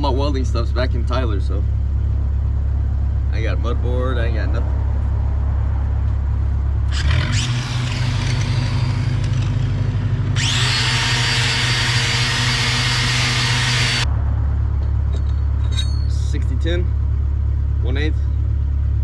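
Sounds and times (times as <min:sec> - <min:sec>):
angle grinder grinding steel: 0:06.9 - 0:14.1
welding machine engine running: 0:06.9 - 0:14.1.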